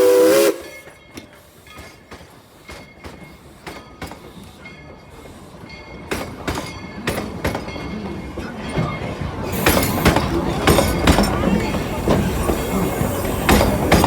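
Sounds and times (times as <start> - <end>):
steam locomotive exhaust chuffs: 0.0 - 6.7, 9.5 - 14.0
rail noise: 0.0 - 14.0.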